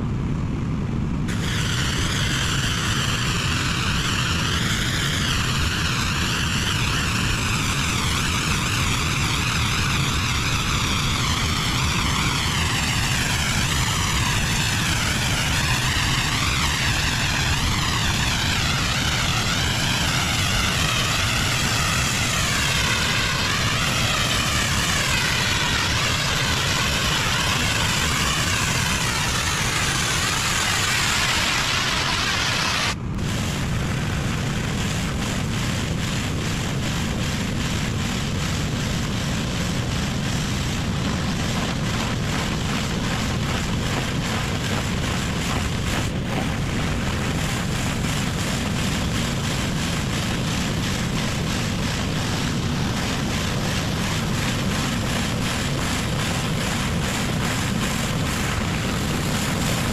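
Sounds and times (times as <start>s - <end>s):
pressure washer spraying: 1.3s - 59.9s.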